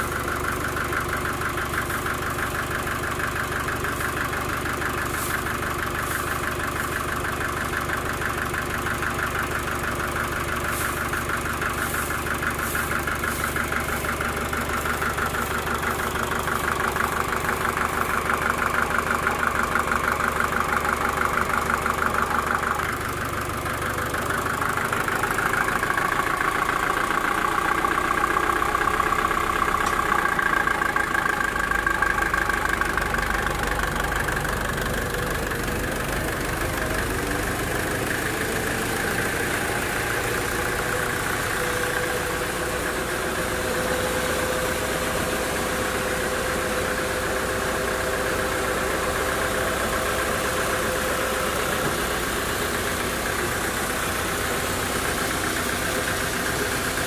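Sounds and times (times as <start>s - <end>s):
sawmill saw running: 0.0s - 57.0s.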